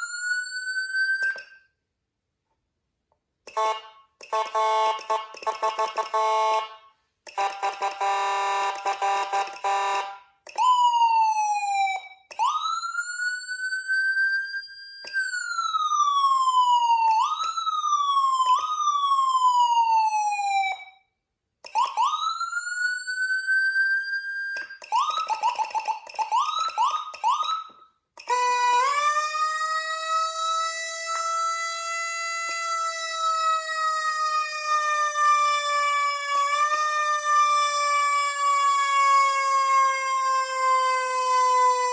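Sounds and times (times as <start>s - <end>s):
electronic siren: 10.6s - 21.0s, 21.7s - 41.9s.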